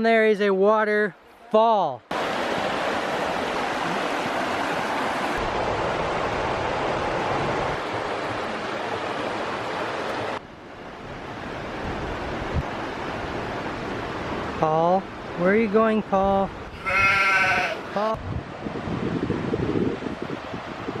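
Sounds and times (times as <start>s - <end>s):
wind on microphone: 16.6s - 21.0s.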